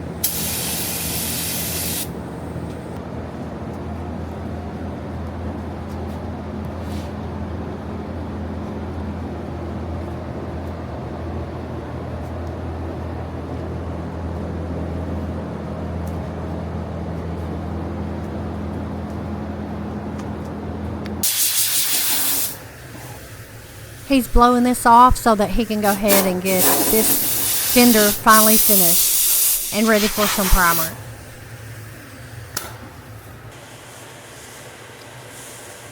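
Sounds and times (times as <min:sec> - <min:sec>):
air blow gun hissing: 0:00.2 - 0:02.2, 0:21.2 - 0:24.4, 0:25.8 - 0:35.9.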